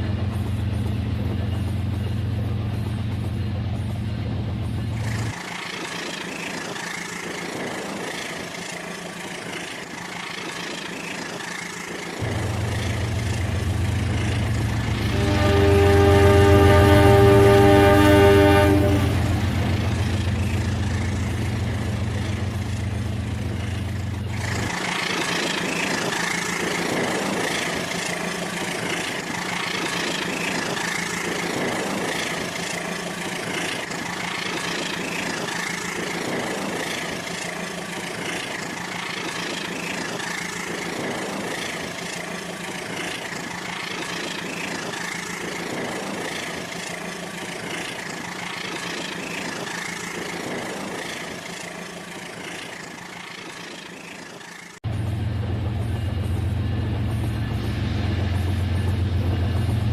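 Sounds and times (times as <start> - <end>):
low hum: 12.2 - 24.7.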